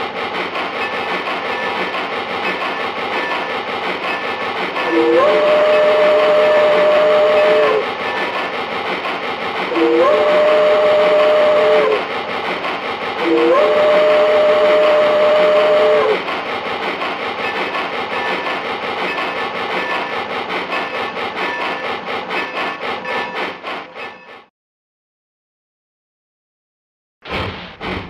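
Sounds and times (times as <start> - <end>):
steam locomotive whistle: 0.8 - 8.5, 9.6 - 12.1, 13.2 - 16.3, 17.4 - 21.8.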